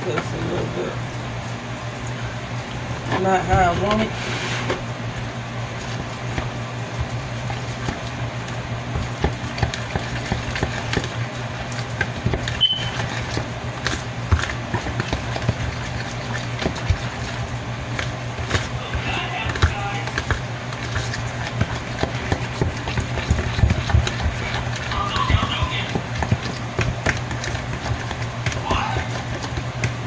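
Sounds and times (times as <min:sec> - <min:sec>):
steady low hum: 0:00.0 - 0:30.0
spoon stirring batter in bowl: 0:02.8 - 0:30.0.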